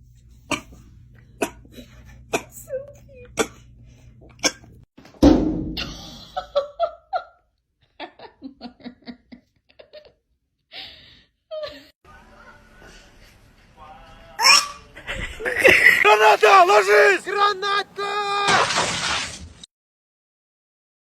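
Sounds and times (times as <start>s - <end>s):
loud thump: 5.2s - 6.2s
people laughing: 14.2s - 18.5s.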